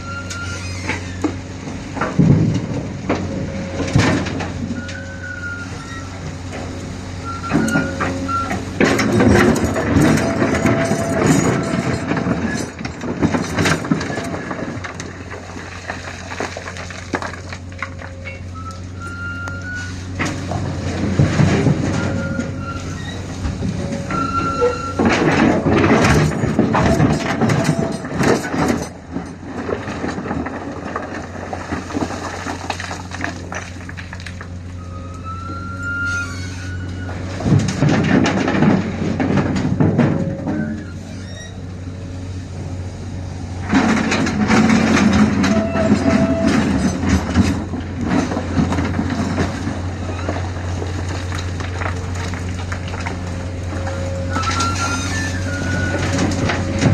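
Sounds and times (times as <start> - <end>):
short high squeals: 0.0 - 1.2, 4.8 - 6.2, 18.2 - 20.1, 22.0 - 23.3, 23.9 - 25.0, 34.8 - 37.2, 40.5 - 41.6, 53.8 - 56.2
heavy diesel machinery running: 0.0 - 56.9
rattling of material loading: 0.0 - 56.9.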